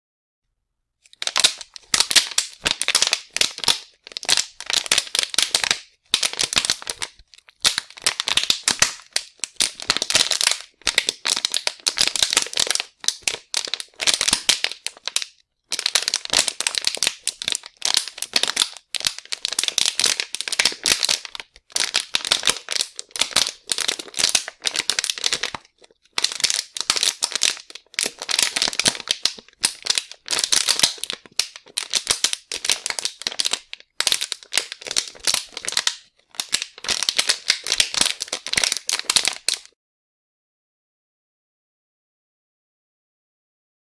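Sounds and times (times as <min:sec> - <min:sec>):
plastic being crumpled: 0:01.1 - 0:39.7.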